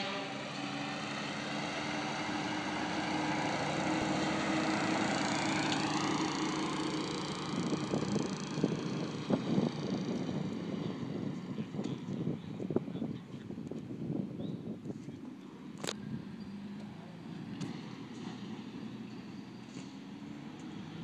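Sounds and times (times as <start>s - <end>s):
excavator diesel engine running: 0.0s - 11.7s.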